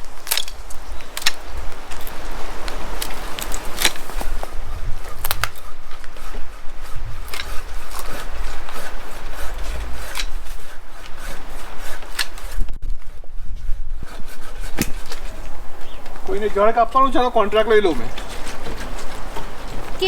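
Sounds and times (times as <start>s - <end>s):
wood scraping and rubbing: 0.0s - 20.0s
pole pruner sharp clicks: 14.6s - 20.0s.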